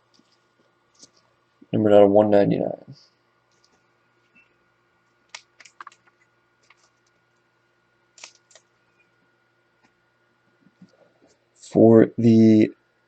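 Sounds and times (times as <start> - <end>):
cards clicking and tapping: 5.3 - 7.2, 8.2 - 8.7.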